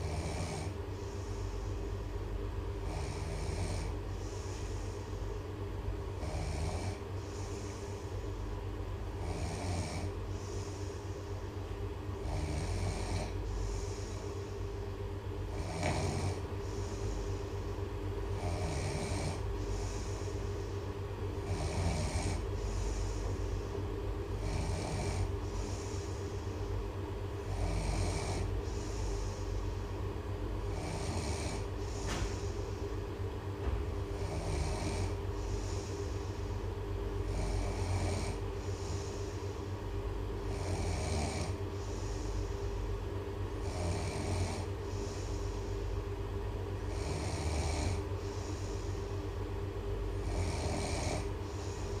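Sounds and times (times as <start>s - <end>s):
person snoring loudly: 0.0s - 0.8s, 2.8s - 4.4s, 6.2s - 7.6s, 9.2s - 10.5s, 12.2s - 14.2s, 15.5s - 17.2s, 18.4s - 20.2s, 21.4s - 23.2s, 24.4s - 26.0s, 27.4s - 29.2s, 30.6s - 32.5s, 34.2s - 35.9s, 37.2s - 39.1s, 40.5s - 42.4s, 43.6s - 45.4s, 46.8s - 48.7s, 50.2s - 52.0s.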